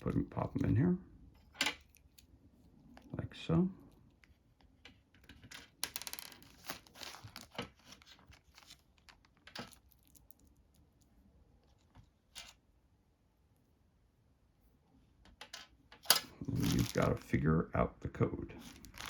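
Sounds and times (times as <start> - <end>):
plastic pegs clicking and scraping: 15.3 - 17.1.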